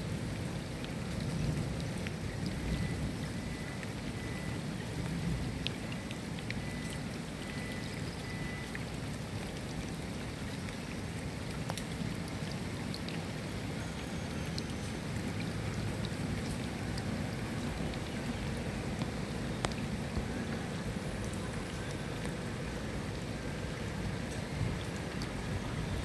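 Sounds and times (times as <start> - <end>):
steady rain hiss: 0.0 - 7.4, 11.0 - 26.0
raindrops clicking: 5.0 - 9.7, 14.5 - 23.2, 24.1 - 25.8.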